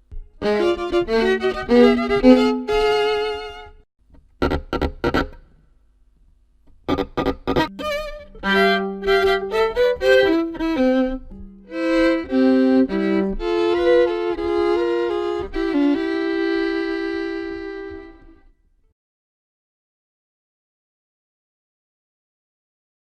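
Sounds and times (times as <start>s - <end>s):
solo violin: 0.4s - 3.8s, 7.2s - 18.5s.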